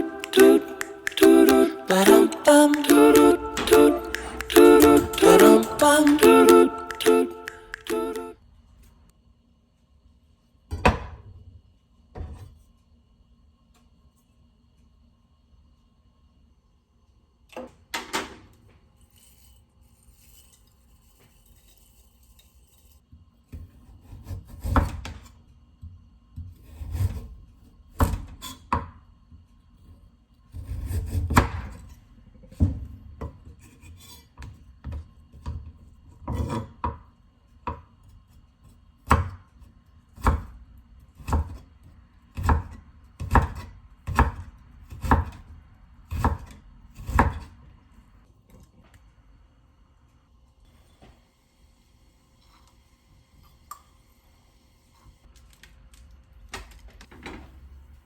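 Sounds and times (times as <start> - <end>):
knife chopping on wooden board: 42.4 - 45.4.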